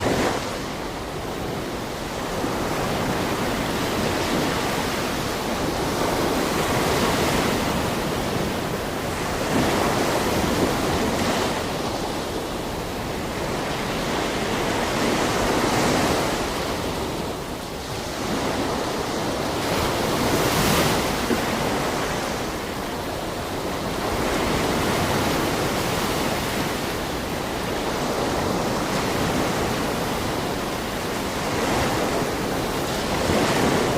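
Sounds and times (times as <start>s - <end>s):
sea waves washing onto shore: 0.0s - 33.9s.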